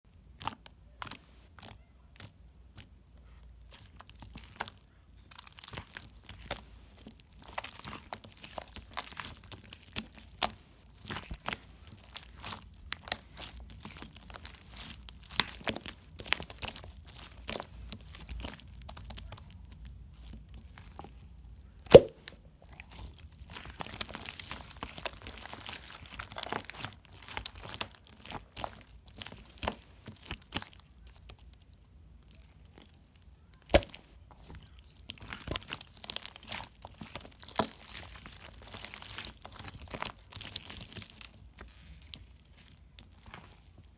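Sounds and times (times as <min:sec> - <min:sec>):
slime clicks and crackly pops: 0:21.9 - 0:22.3, 0:33.5 - 0:34.0.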